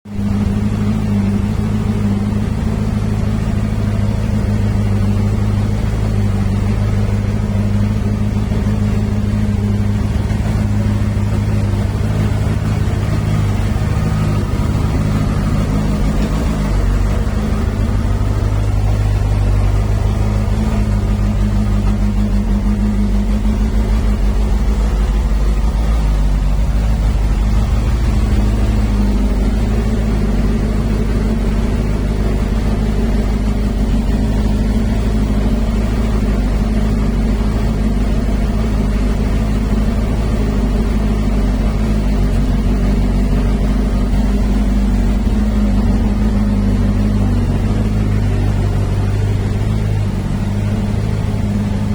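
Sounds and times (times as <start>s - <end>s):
motorcycle engine idling: 0.0s - 51.9s.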